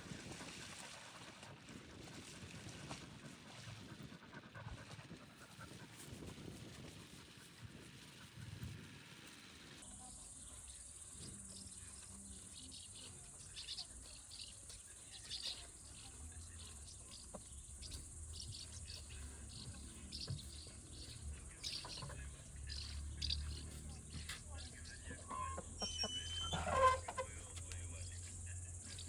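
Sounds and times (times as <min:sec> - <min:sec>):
crickets chirring: 0:09.8 - 0:29.0.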